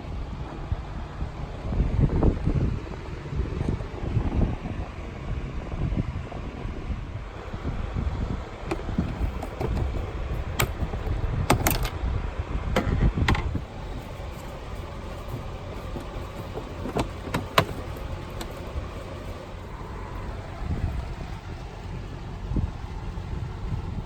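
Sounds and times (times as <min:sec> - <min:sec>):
steady low rumble: 0:00.0 - 0:24.0
sharp clicks and knocks: 0:08.7 - 0:12.0, 0:12.8 - 0:21.3.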